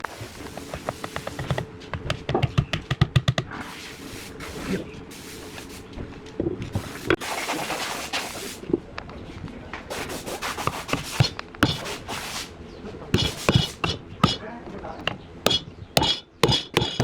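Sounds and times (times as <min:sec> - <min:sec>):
sharp knocks and clicks: 0:00.5 - 0:03.6, 0:13.2 - 0:14.4, 0:15.0 - 0:17.0
scraping across wood: 0:09.9 - 0:12.5, 0:13.2 - 0:14.4.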